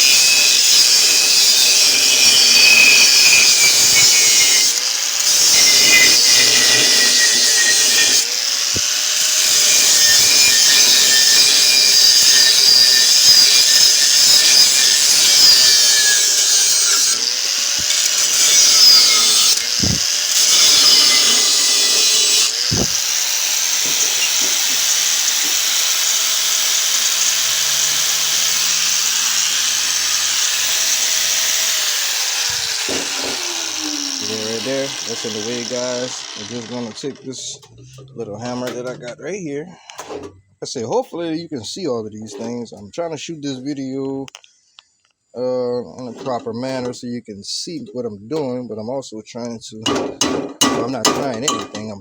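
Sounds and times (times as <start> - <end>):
angle grinder cutting steel: 0.0 - 38.8.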